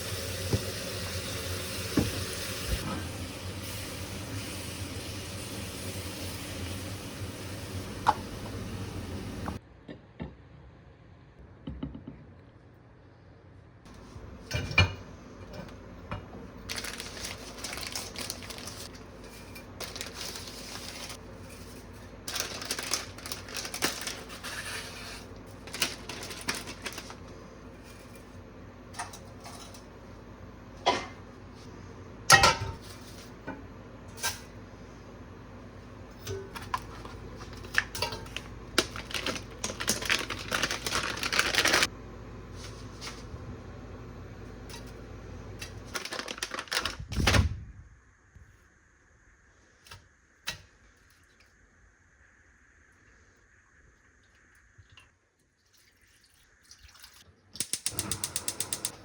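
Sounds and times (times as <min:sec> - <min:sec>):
scraping and rustling: 0:16.7 - 0:28.4.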